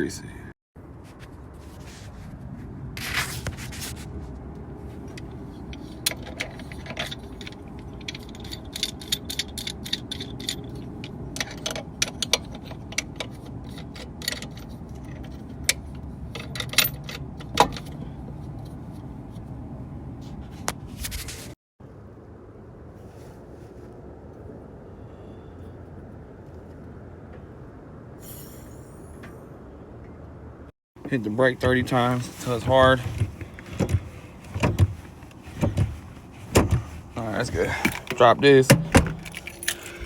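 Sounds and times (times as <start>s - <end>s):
metal parts and tools clinking: 5.1s - 18.0s, 37.4s - 40.0s.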